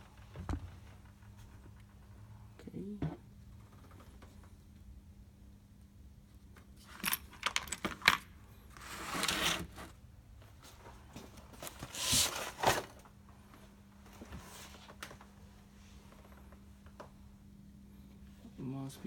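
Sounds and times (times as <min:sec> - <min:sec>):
rustling scraping noises: 0:08.7 - 0:10.0, 0:10.6 - 0:13.1.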